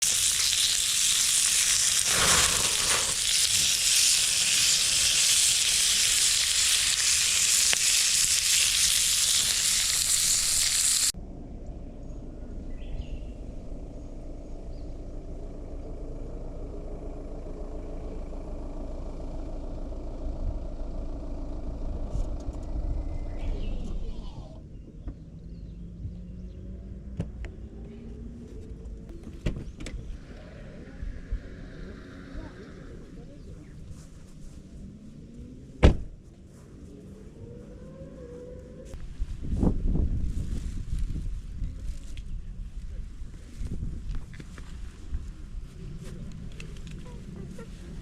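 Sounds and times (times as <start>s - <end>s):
food frying sizzle: 0.0s - 11.2s
low steady rumble: 0.0s - 48.0s.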